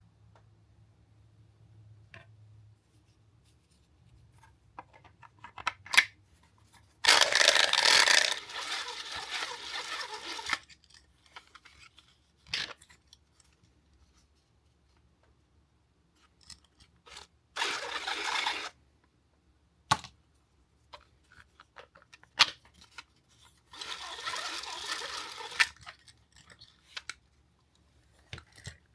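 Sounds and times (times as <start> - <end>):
spool rolling rattle: 7.0 - 10.6, 23.7 - 25.8.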